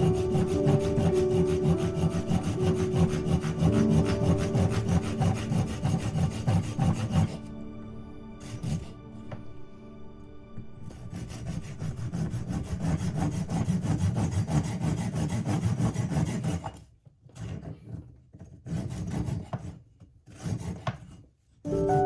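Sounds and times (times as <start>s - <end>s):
saw cutting through wood: 0.0s - 9.6s, 10.8s - 16.8s.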